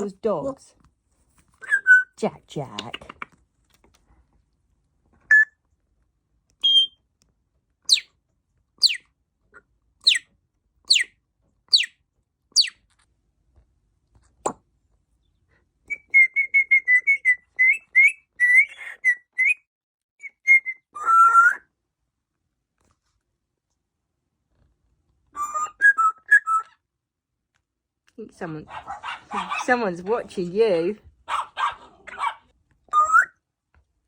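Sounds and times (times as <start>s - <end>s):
parrot chirping notes: 5.3s - 5.5s, 6.6s - 7.0s, 7.9s - 8.1s, 8.8s - 9.1s, 10.0s - 10.3s, 10.9s - 11.1s, 11.7s - 12.0s, 12.6s - 12.8s, 20.2s - 21.7s, 25.4s - 26.8s
parrot laser-like whistles: 6.6s - 7.0s
parrot squawk: 10.9s - 11.1s, 20.5s - 21.7s.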